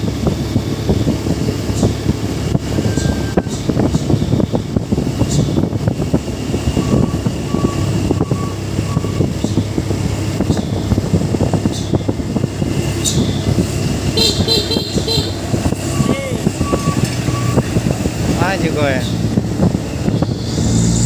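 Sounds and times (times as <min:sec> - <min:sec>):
truck engine rumbling: 0:00.0 - 0:21.0
horn toot: 0:14.1 - 0:16.3.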